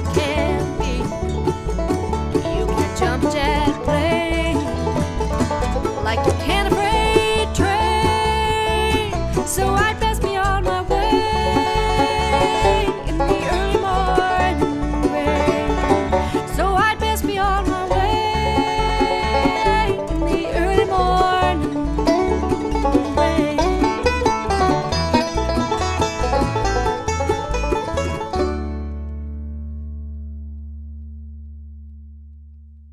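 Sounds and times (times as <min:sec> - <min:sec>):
bluegrass band playing: 0:00.0 - 0:29.8.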